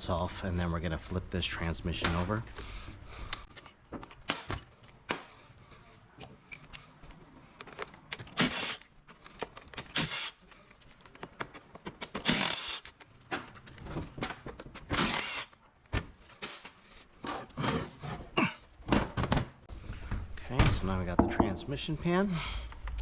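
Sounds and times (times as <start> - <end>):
metal tools clinking and knocking: 21.2 - 21.8.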